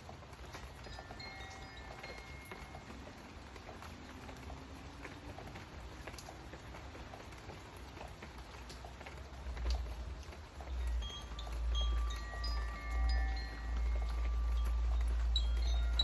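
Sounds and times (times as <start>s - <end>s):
drops ticking: 0.0s - 16.0s
rain pattering: 0.0s - 16.0s
high chime tones: 0.9s - 2.9s, 10.9s - 16.0s.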